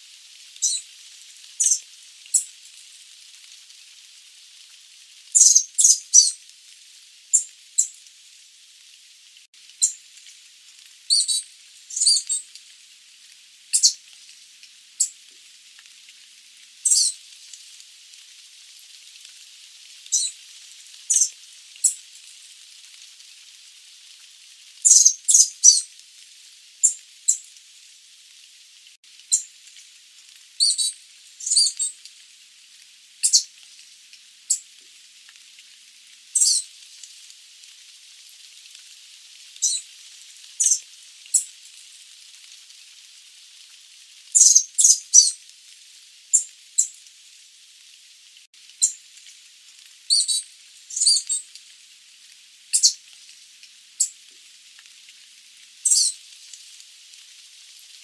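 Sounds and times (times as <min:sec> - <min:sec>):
faint steady hiss: 0:00.0 - 0:58.0
bird high-pitched calls: 0:00.6 - 0:00.8, 0:01.6 - 0:02.5, 0:05.4 - 0:06.4, 0:11.1 - 0:12.4, 0:13.8 - 0:14.0, 0:16.8 - 0:17.2, 0:20.1 - 0:20.4, 0:21.1 - 0:22.0, 0:24.9 - 0:25.9, 0:30.6 - 0:31.9, 0:33.2 - 0:33.5, 0:36.4 - 0:36.6, 0:39.6 - 0:39.8, 0:40.6 - 0:40.8, 0:44.4 - 0:45.4, 0:50.1 - 0:51.4, 0:52.8 - 0:53.0, 0:55.9 - 0:56.1.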